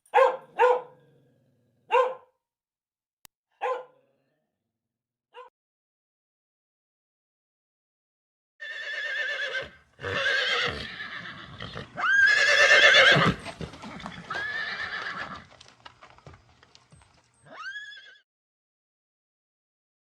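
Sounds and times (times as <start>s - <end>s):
horse whinnying: 8.6s - 15.5s, 17.4s - 18.2s.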